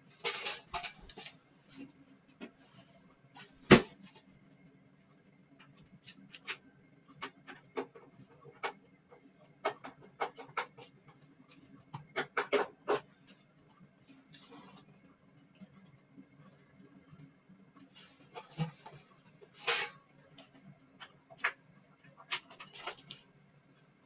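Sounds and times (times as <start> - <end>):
scattered clicks and taps: 5.6 - 15.0.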